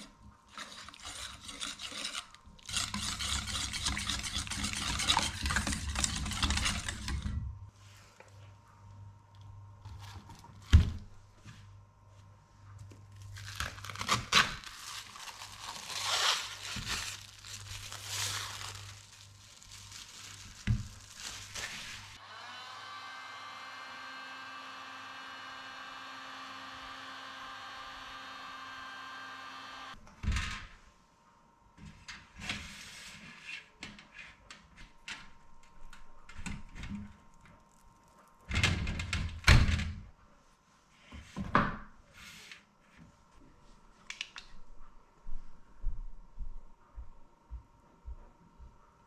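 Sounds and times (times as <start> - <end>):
kitchen appliance motor running: 22.1 - 30.0.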